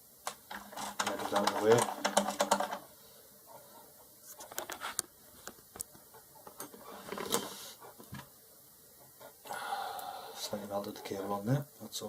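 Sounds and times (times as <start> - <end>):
small items clicking on workbench: 0.2 - 2.8.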